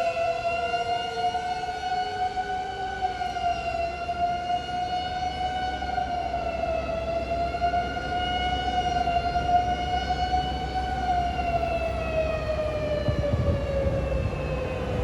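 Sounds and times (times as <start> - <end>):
fire engine siren wailing: 0.0 - 15.0
lower siren tone sliding down: 0.0 - 15.0
low rumble: 6.6 - 15.0.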